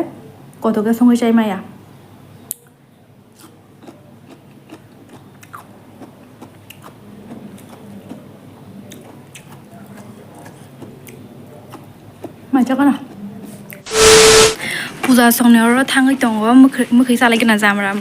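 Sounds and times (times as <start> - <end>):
person chewing food: 3.4 - 8.3, 8.9 - 12.4.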